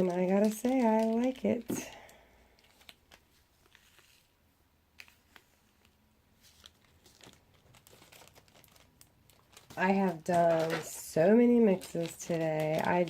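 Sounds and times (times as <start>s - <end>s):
faint clicks and rustles: 0.0s - 4.3s, 5.0s - 13.0s.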